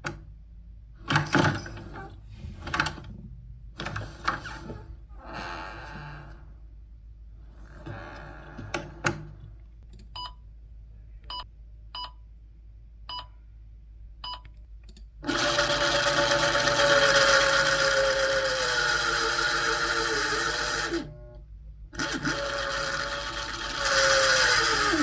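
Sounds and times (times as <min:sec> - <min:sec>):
motorized whir: 0:15.2 - 0:21.4, 0:22.0 - 0:25.0.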